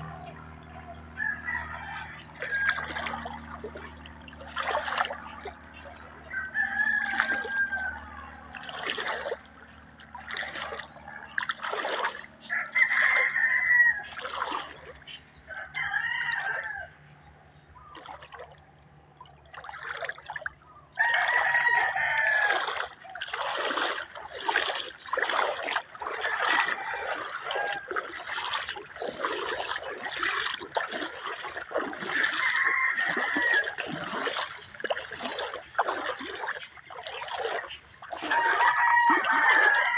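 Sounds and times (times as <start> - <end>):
shallow river trickling: 0.0 - 39.9
roosters crowing: 0.1 - 4.0, 6.0 - 9.2, 12.4 - 17.2, 20.9 - 36.1, 37.6 - 39.9.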